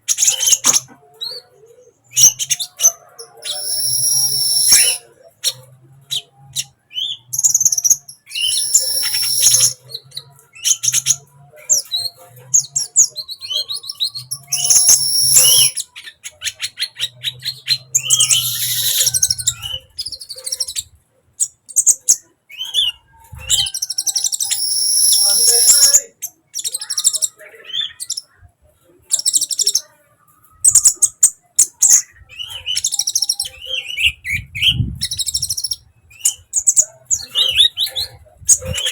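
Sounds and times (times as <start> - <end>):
bird twittering: 0.1 - 28.3.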